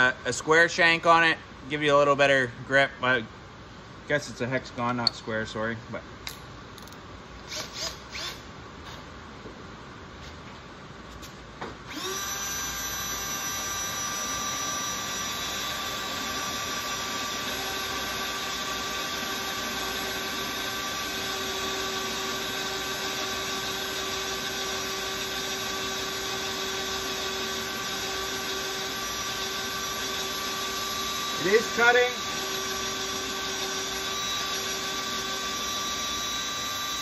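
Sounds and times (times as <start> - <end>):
cordless drill boring into metal: 11.9 - 37.0.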